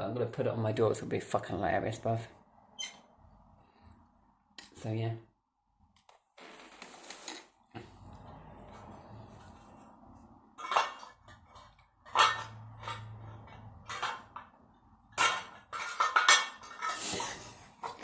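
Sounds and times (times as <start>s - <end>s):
hard objects clinking and knocking: 10.5s - 18.0s.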